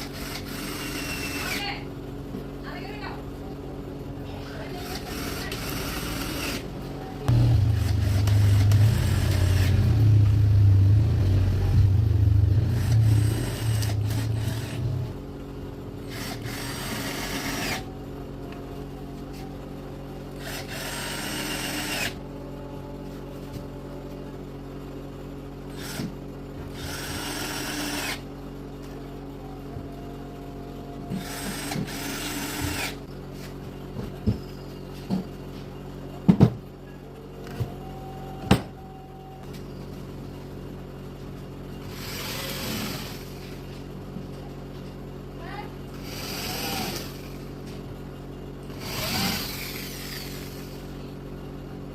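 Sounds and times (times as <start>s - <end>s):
electric drill driving screws: 0.0s - 1.7s, 4.8s - 6.7s, 7.8s - 9.9s, 12.7s - 14.9s, 16.0s - 17.9s, 20.4s - 22.2s, 25.7s - 28.2s, 31.1s - 33.0s, 41.9s - 43.6s, 46.0s - 47.4s, 48.7s - 50.9s.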